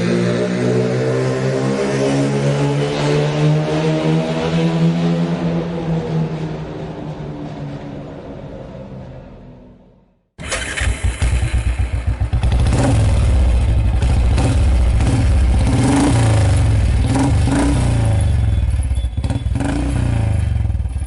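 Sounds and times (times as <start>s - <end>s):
motorcycle engine revving: 10.4s - 21.0s.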